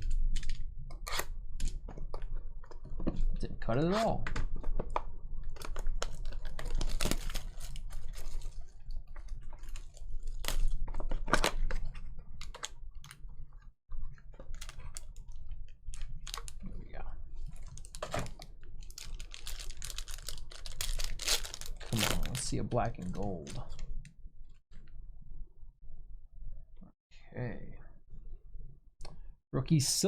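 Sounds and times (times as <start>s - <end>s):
plastic wrapping crackling: 5.6s - 11.8s, 14.4s - 16.7s, 17.4s - 23.8s.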